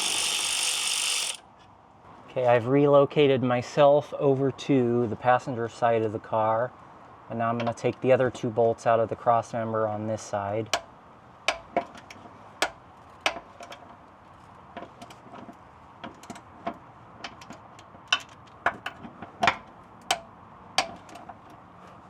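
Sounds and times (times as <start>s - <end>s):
hand ratchet clicking: 0.0s - 1.4s.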